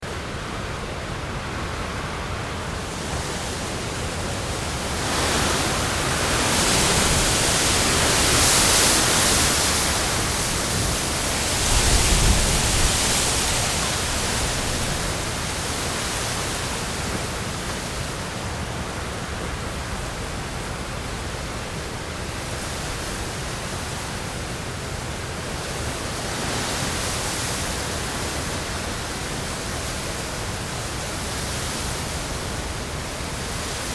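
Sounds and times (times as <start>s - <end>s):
wind gusting through trees: 0.0s - 33.9s
leaves rustling: 0.5s - 19.2s.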